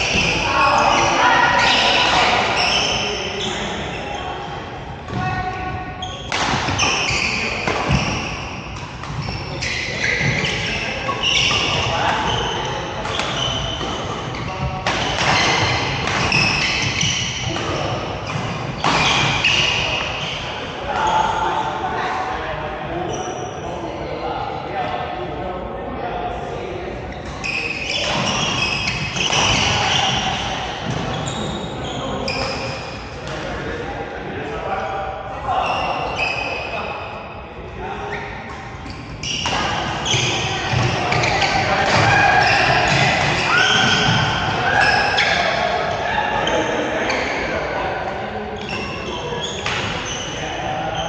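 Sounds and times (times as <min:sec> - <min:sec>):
shoes squeaking on floor: 0:00.0 - 0:21.4, 0:27.1 - 0:33.1, 0:35.5 - 0:37.1, 0:38.1 - 0:47.8, 0:48.5 - 0:51.0
racket hitting shuttlecock: 0:06.3 - 0:09.3, 0:13.0 - 0:14.2
rackets hitting shuttlecock: 0:06.3 - 0:09.3, 0:13.0 - 0:20.1, 0:28.0 - 0:31.1.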